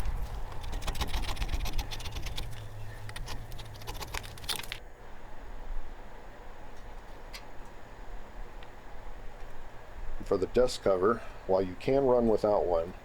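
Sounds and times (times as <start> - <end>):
scraper scratching metal: 0.0 - 4.8.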